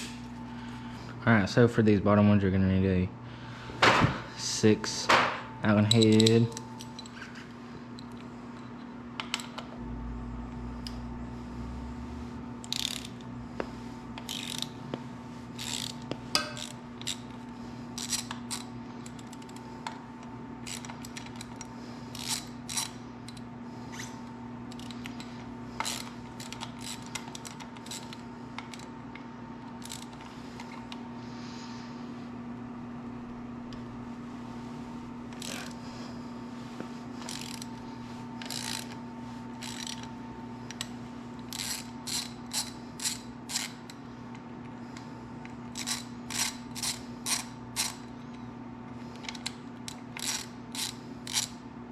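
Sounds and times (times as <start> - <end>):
steady hum: 0.0 - 51.9
ratchet clicking: 12.6 - 13.3, 14.2 - 14.7, 15.6 - 17.4, 18.0 - 19.6, 20.6 - 23.4, 24.7 - 28.9, 29.8 - 30.7, 37.2 - 37.7, 38.4 - 39.0, 39.6 - 40.1, 40.7 - 44.0, 45.7 - 48.1, 49.2 - 51.6.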